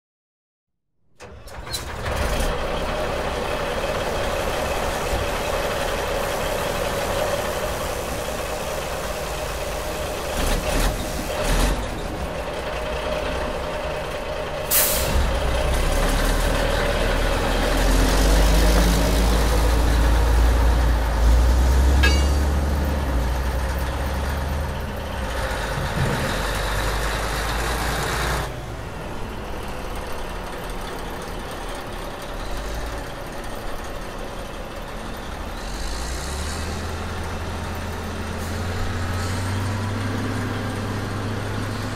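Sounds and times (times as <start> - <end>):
diesel truck engine running: 1.2 - 41.9
air brake hiss: 14.7 - 15.3.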